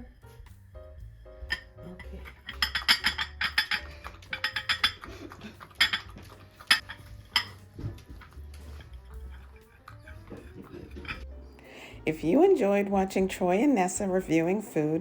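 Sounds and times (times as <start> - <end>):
faint background music: 0.0 - 15.0
clinks against a dish: 1.5 - 5.1, 5.8 - 6.1, 6.7 - 7.6.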